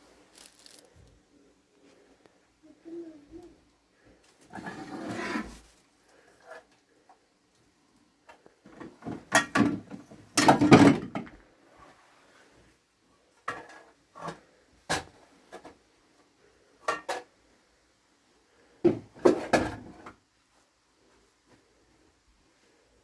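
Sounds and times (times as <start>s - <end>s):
household knocks and clatters: 8.7s - 11.4s, 18.8s - 20.1s.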